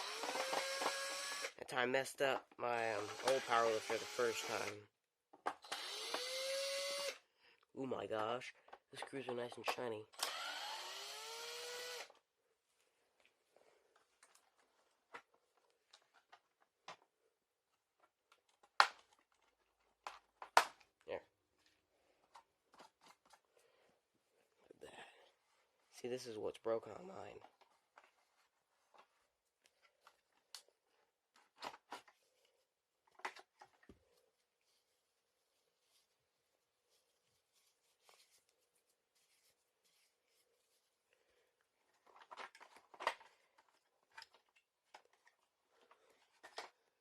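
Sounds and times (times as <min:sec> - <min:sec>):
cordless drill whirring: 0:00.0 - 0:01.6, 0:03.0 - 0:04.8, 0:05.6 - 0:07.2, 0:10.2 - 0:12.1
faint clicks of small parts: 0:41.8 - 0:46.8.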